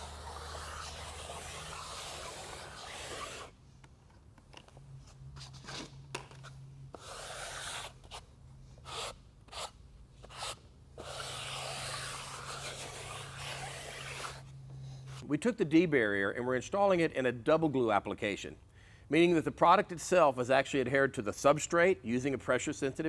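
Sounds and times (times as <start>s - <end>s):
scraping strokes on a floor: 0.0s - 3.6s, 5.0s - 8.2s, 8.8s - 15.2s.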